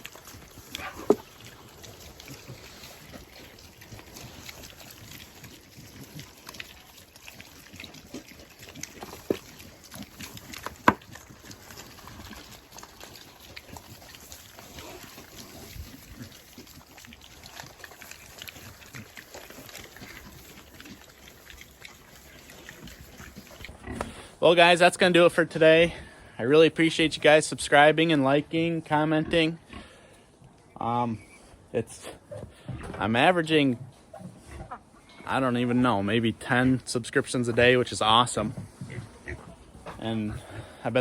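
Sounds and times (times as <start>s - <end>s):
pigs grunting: 0.0s - 24.4s, 29.0s - 30.2s, 37.2s - 41.0s.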